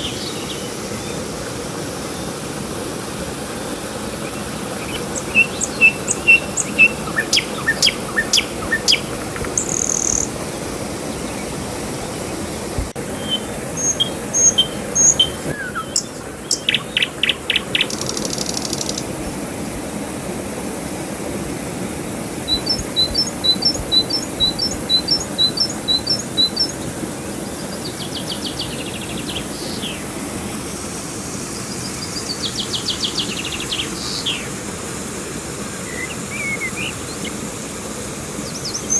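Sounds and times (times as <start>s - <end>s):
songbirds singing: 0.0s - 1.4s, 3.7s - 10.4s, 13.0s - 19.2s, 22.4s - 30.2s, 31.5s - 34.6s, 35.8s - 37.4s, 38.4s - 38.9s
river water flowing: 0.0s - 38.9s.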